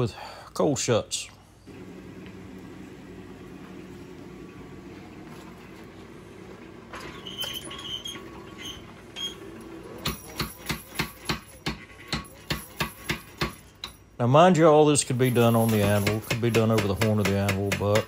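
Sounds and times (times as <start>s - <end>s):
low steady hum: 1.2s - 10.6s.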